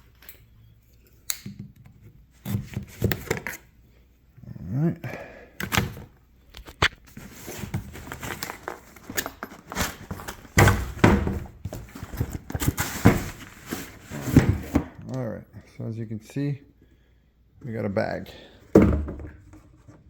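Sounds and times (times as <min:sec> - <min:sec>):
cardboard rustling and scraping: 0:06.8 - 0:15.0.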